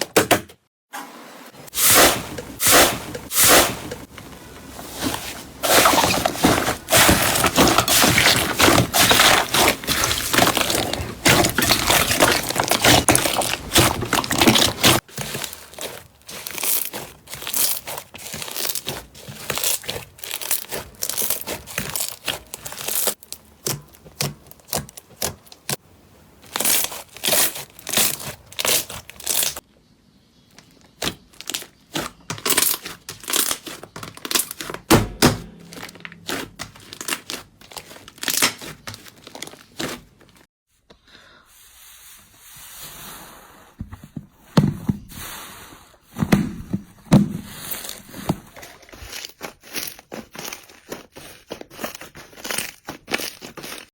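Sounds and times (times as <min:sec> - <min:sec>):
slime crackling and popping: 0:05.6 - 0:25.8, 0:26.4 - 0:29.6, 0:35.6 - 0:40.0, 0:48.6 - 0:53.9.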